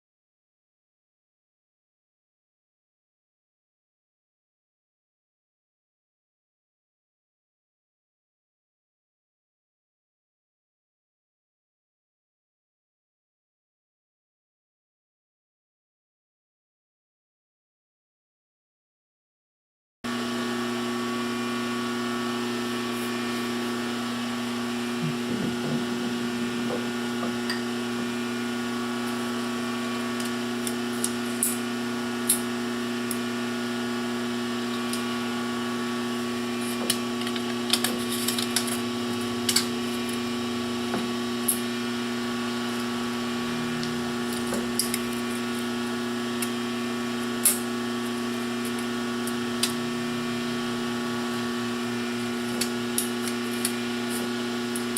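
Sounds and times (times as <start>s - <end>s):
lathe motor and gear whine: 20.1s - 54.9s.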